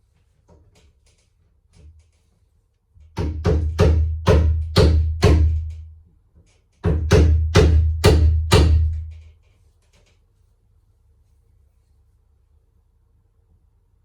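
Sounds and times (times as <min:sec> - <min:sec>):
hammer striking chisel: 0:03.1 - 0:05.8, 0:06.8 - 0:09.2.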